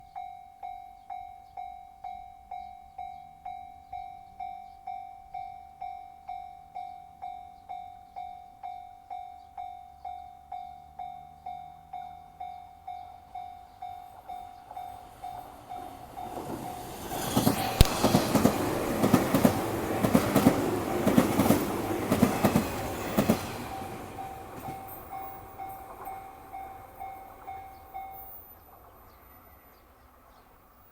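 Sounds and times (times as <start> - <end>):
train wheels clattering over rail joints: 14.0 - 27.6
level crossing bell clanging: 22.5 - 28.8.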